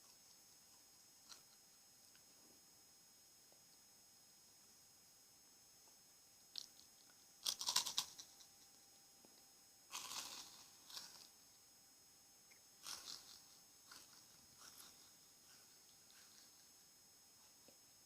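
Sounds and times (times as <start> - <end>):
crisp crunching: 6.6 - 8.7, 9.9 - 11.4, 12.8 - 16.7.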